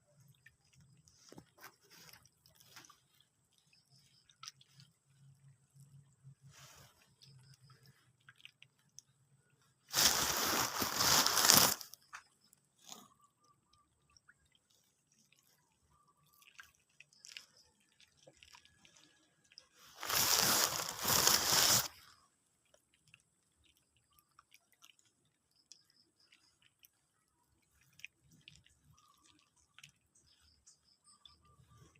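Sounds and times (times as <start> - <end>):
faint clicks and drips: 0.0 - 9.9, 11.9 - 20.0, 21.9 - 31.9.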